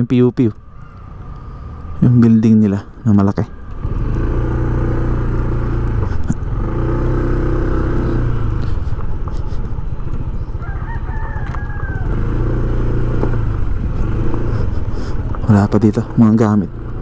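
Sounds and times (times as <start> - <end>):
vehicle engine running: 0.4 - 17.0
rooster crowing: 10.4 - 12.6.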